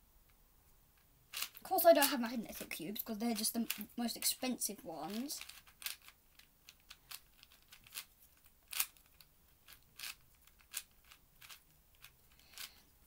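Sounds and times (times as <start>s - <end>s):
plastic puzzle cube clicking: 5.4s - 12.8s.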